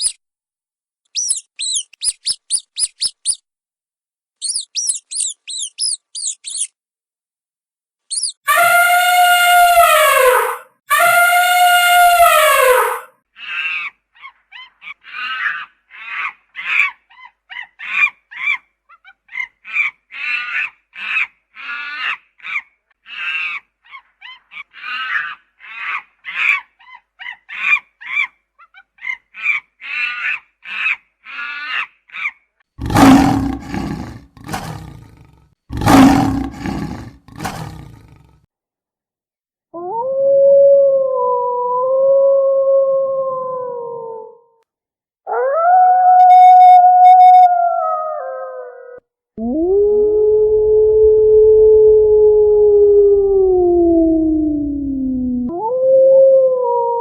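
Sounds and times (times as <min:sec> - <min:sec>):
large animal roaring: 0:32.8 - 0:38.4.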